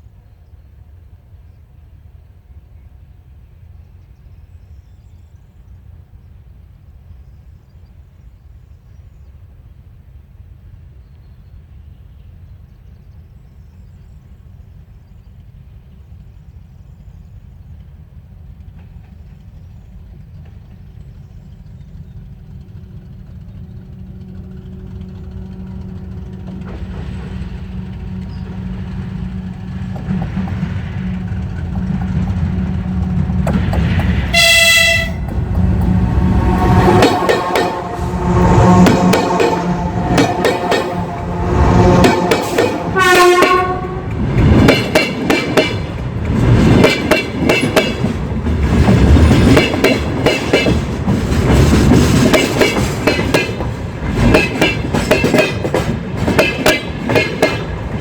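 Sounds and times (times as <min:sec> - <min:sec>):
locomotive engine rumble: 0:20.9 - 0:52.2
locomotive horn blast: 0:34.2 - 0:44.3.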